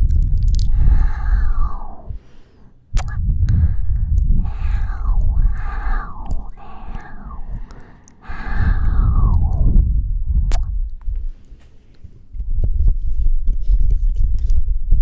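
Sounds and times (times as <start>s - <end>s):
low rumble of breath on mic: 0.0s - 15.0s
breathy exhales into microphone: 0.7s - 9.8s
mouth click: 2.9s - 9.8s, 10.4s - 12.7s.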